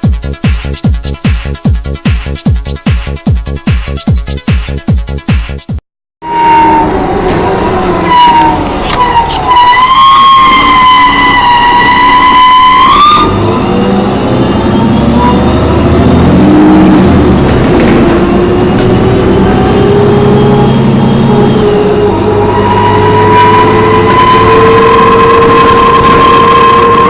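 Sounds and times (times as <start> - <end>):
high-pitched bus screech: 6.2 - 17.4, 18.2 - 27.0
bus drivetrain rumble: 6.8 - 9.6, 13.2 - 27.0.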